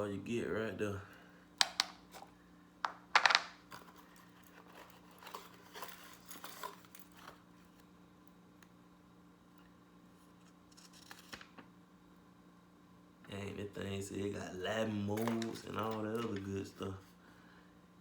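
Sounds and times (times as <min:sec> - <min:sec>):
faint steady hum: 0:00.0 - 0:18.0
plastic items clicking and tapping: 0:01.6 - 0:03.9.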